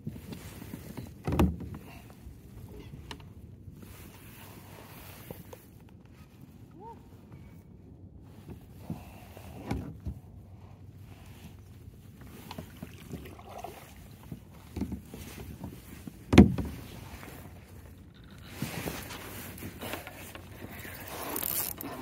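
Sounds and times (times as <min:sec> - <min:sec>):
rustling scrape: 0:03.7 - 0:06.7, 0:14.1 - 0:22.0.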